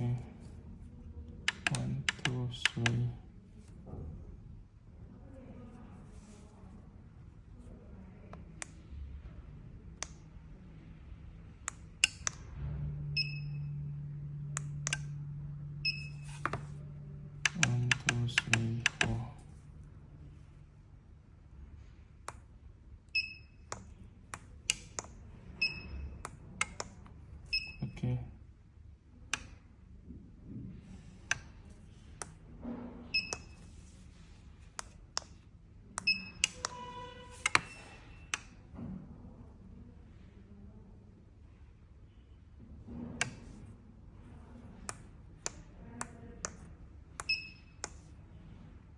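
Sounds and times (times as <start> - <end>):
steady low hum: 0.0 - 48.9
multi-tone beep: 13.1 - 13.9, 15.8 - 16.4, 23.1 - 23.7, 25.6 - 26.2, 27.5 - 28.0, 33.1 - 33.6, 36.0 - 38.2, 47.3 - 47.8.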